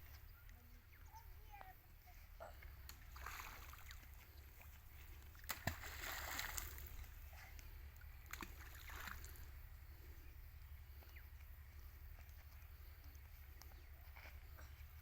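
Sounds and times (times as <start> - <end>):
water splashing: 2.9 - 7.2, 8.2 - 9.6
stone plopping into water: 5.4 - 6.8.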